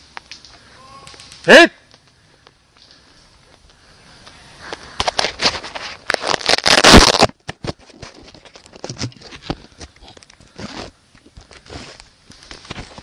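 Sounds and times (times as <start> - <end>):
rustling and scraping: 2.8 - 13.0.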